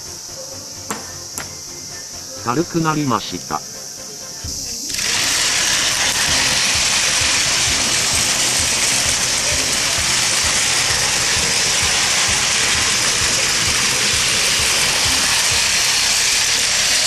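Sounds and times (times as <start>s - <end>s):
toy train motor whirring: 0.0s - 17.0s
gears rattling: 4.9s - 17.0s.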